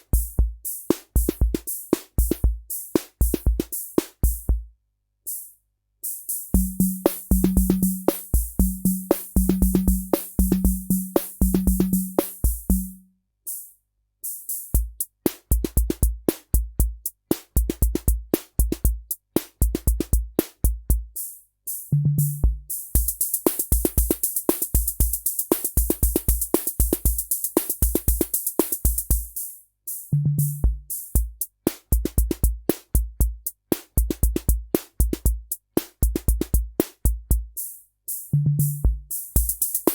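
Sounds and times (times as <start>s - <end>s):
drum machine rock rhythm: 0.0s - 4.7s, 5.3s - 39.9s.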